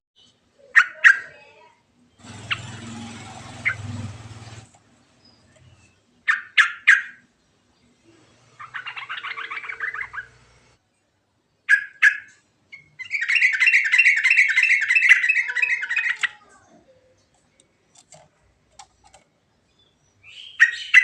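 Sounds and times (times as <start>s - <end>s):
bird singing sharp notes and trills: 2.0s - 21.0s.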